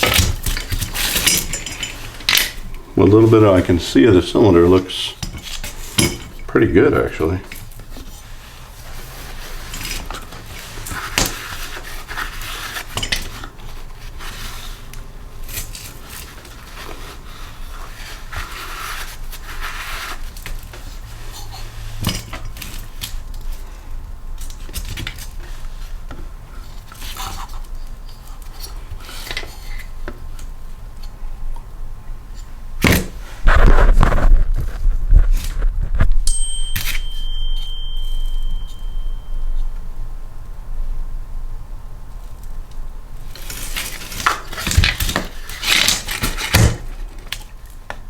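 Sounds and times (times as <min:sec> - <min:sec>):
metal tools clinking and scraping: 0:00.0 - 0:07.7, 0:12.6 - 0:13.5, 0:36.3 - 0:39.8.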